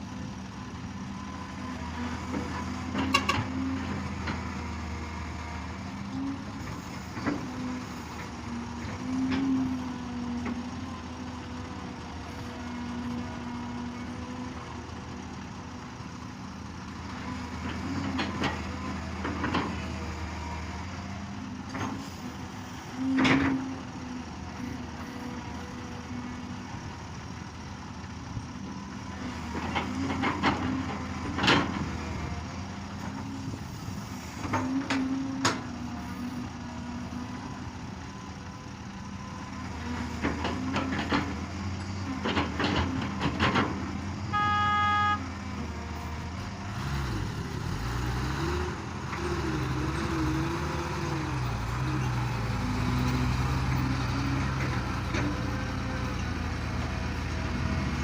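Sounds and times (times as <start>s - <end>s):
excavator diesel engine running: 0.0s - 58.0s
horn sounding: 44.3s - 45.3s.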